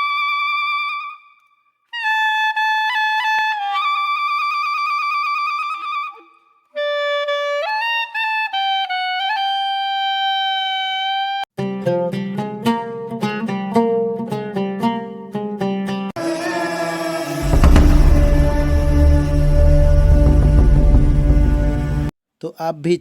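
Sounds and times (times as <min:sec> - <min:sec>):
playful clarinet melody: 0:02.0 - 0:11.4.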